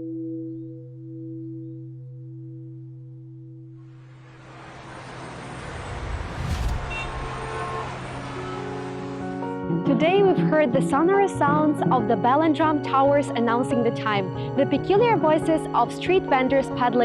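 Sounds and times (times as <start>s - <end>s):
rising rush of noise: 3.9s - 9.4s.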